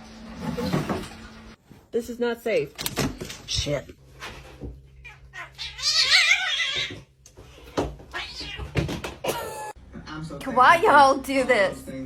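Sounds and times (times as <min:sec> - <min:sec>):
cat yowling: 0:05.0 - 0:07.0.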